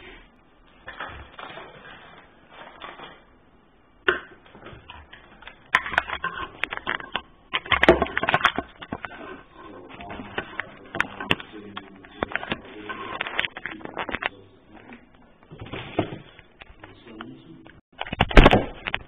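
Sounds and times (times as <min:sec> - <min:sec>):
packaging crinkling and rustling: 0:00.8 - 0:03.3, 0:05.1 - 0:14.4
clicks and knocks: 0:04.0 - 0:09.3, 0:17.9 - 0:19.0.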